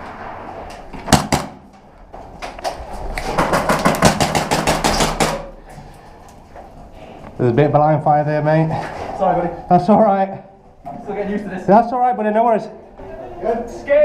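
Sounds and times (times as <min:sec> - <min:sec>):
airsoft gun firing: 0:01.1 - 0:01.7.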